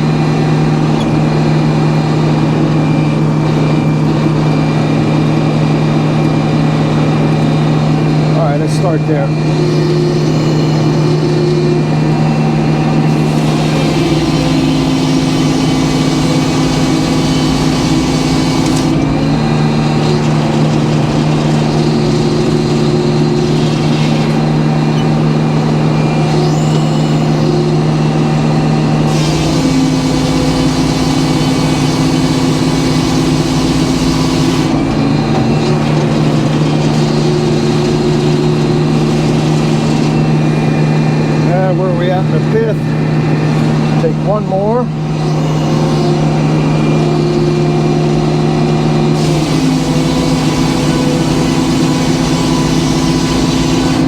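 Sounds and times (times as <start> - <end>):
sawmill engine droning: 0.0 - 54.0
saw cutting through wood: 13.0 - 40.6, 44.3 - 54.0.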